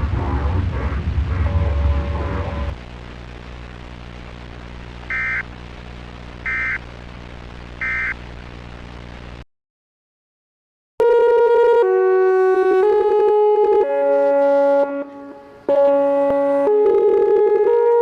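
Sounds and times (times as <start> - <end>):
low electronic drone: 0.0 - 3.0.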